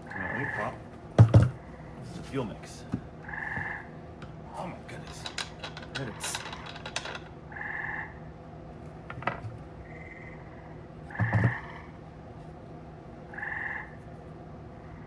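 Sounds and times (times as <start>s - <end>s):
frogs trilling: 0.0s - 2.0s, 3.1s - 4.2s, 7.4s - 8.5s, 9.8s - 12.0s, 13.2s - 14.0s.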